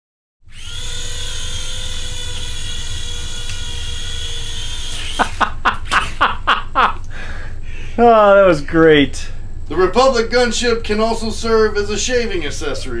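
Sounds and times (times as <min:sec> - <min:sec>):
toy helicopter motor whine: 0:00.5 - 0:05.4
rotor blades striking: 0:00.5 - 0:06.3.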